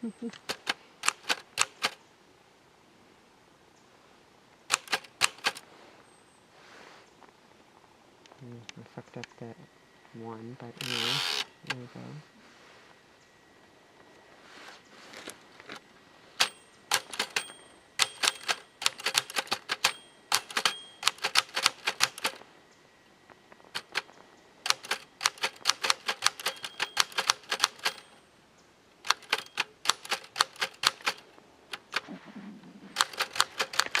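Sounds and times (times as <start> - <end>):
typewriter keys clacking: 16.4 - 22.4, 24.7 - 28.2, 29.1 - 31.2, 33.0 - 34.0.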